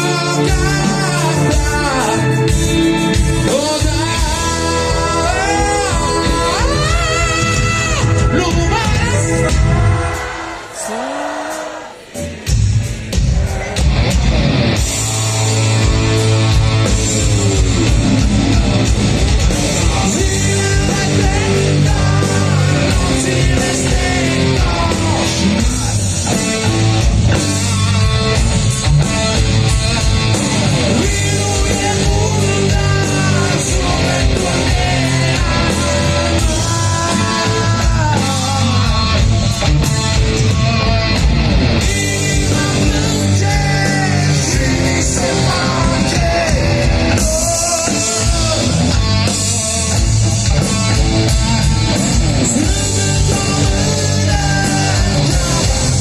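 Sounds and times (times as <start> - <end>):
rock band playing live: 0.0 - 56.0
bending lead guitar melody: 13.8 - 56.0.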